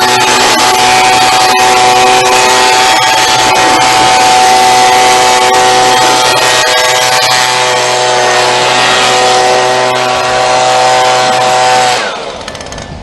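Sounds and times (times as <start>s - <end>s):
blower running: 0.0s - 13.0s.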